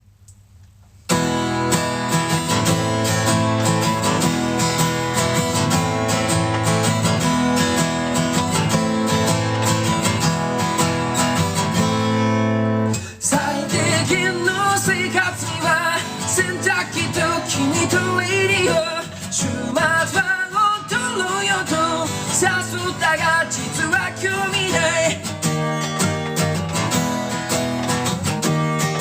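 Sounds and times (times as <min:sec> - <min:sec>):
acoustic guitar strumming: 0:01.1 - 0:29.0
man singing: 0:13.0 - 0:25.5.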